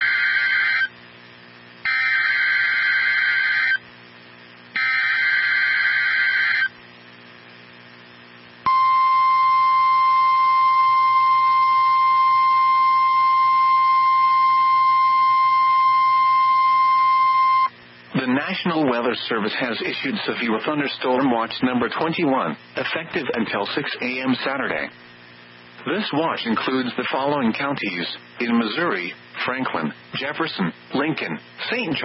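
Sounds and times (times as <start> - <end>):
single-pitched warning alarm tone: 0.0 - 0.9, 1.9 - 3.8, 4.8 - 6.7, 8.7 - 17.7
harsh buzzing data bursts: 0.0 - 18.7.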